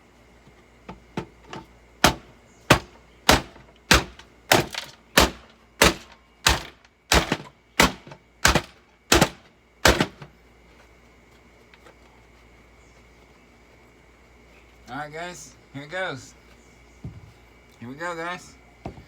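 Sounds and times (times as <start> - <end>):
sharp rhythmic knocks: 2.0 - 10.2.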